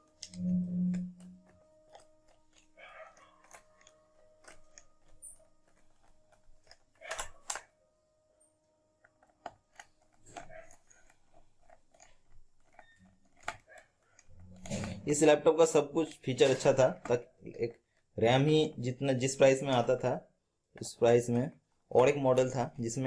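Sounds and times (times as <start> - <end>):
screwdriver tightening screws: 1.3 - 7.6, 9.1 - 15.2.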